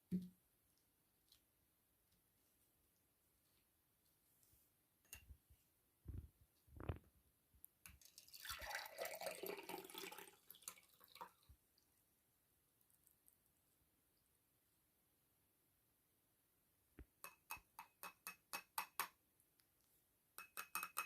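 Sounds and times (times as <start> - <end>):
liquid pouring: 7.9 - 11.6.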